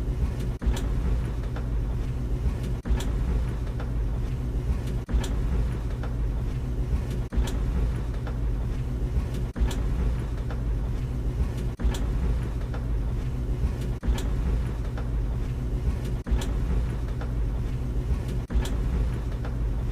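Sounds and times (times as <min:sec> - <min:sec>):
dryer drum knocking: 0:00.0 - 0:19.9
tumble dryer rumbling: 0:00.0 - 0:19.9.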